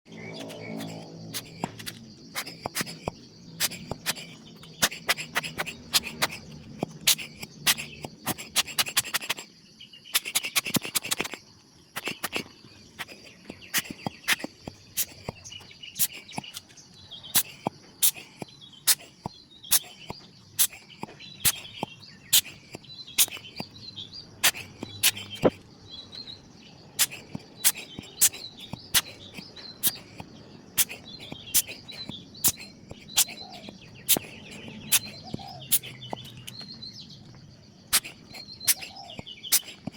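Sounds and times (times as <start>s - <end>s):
birds chirping: 0.1s - 39.9s
sharp clicks: 10.2s - 11.4s, 27.0s - 39.9s.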